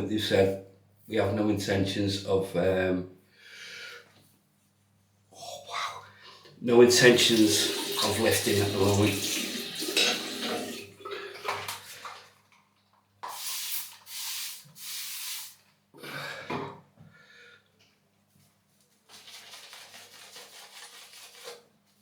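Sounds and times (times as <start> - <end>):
shaving brush swishing in soap: 19.1 - 21.7.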